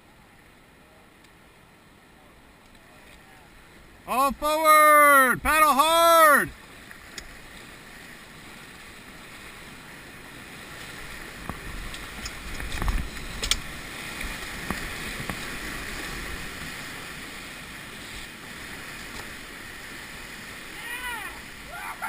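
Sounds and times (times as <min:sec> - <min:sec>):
whitewater rapids rushing: 0:03.9 - 0:06.8, 0:07.4 - 0:22.0.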